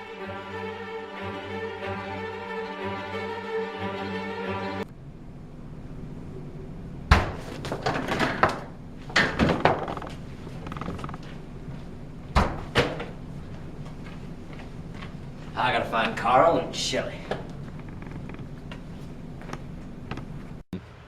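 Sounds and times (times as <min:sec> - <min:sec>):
orchestral string music: 0:00.0 - 0:04.9
low steady hum: 0:00.0 - 0:08.0.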